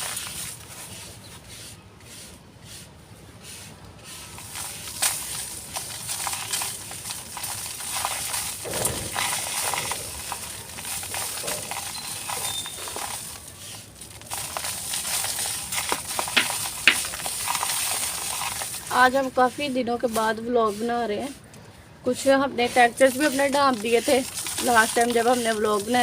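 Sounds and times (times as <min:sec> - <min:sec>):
cement chunks crumbling: 0:04.2 - 0:19.3, 0:22.1 - 0:26.0.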